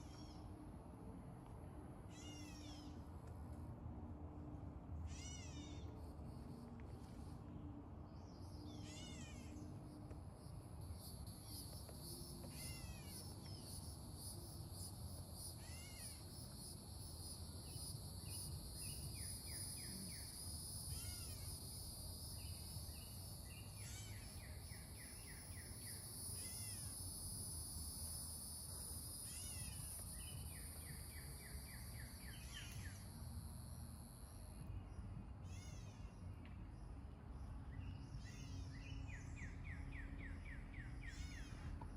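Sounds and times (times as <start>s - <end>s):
high-pitched insect drone: 11.3s - 33.7s.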